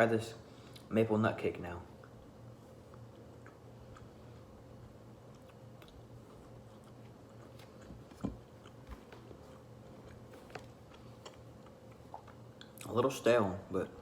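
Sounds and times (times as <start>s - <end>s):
low steady hum: 0.0s - 14.0s
person chewing: 2.0s - 12.9s.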